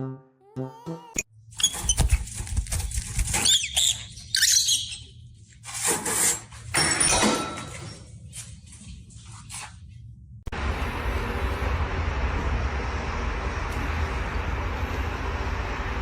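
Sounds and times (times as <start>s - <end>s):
animal squeaky calls: 0.4s - 1.9s
rustling noises: 1.6s - 4.1s, 8.0s - 10.1s
steady low hum: 9.8s - 16.0s.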